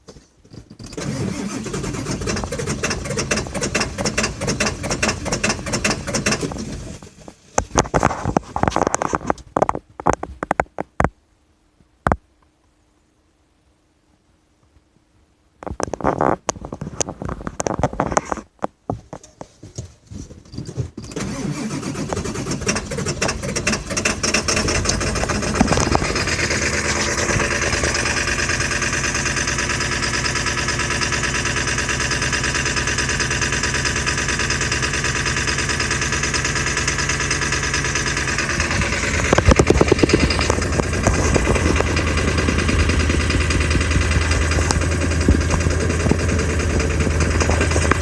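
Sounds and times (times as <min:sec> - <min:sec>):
diesel engine cranking: 0:00.6 - 0:09.7, 0:20.5 - 0:48.0
diesel engine idling: 0:00.9 - 0:07.4, 0:21.2 - 0:48.0.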